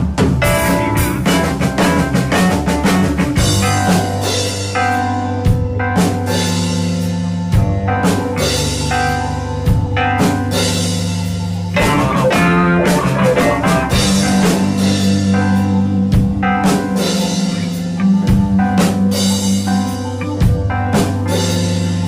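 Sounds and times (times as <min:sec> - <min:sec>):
drum fill: 0:00.0 - 0:04.1, 0:11.8 - 0:15.5
live band playing: 0:00.0 - 0:22.0.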